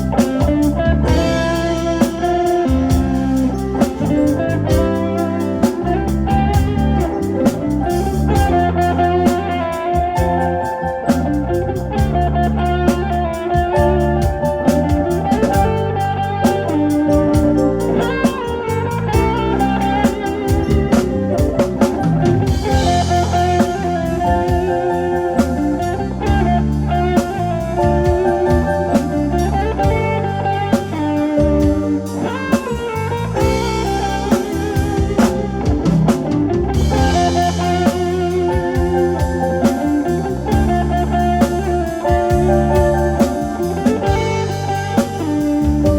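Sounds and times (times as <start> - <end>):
live band over loudspeakers: 0.0 - 45.9
cymbals: 12.9 - 26.1.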